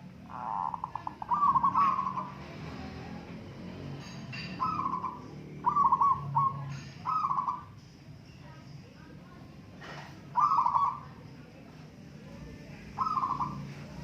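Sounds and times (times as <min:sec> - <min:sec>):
doves cooing: 0:00.0 - 0:07.8, 0:09.8 - 0:11.2, 0:12.7 - 0:14.0.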